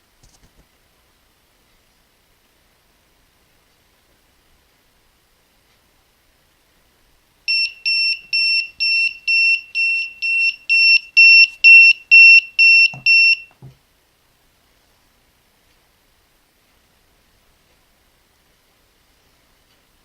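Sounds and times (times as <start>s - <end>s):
alarm clock beeping: 7.5s - 13.6s.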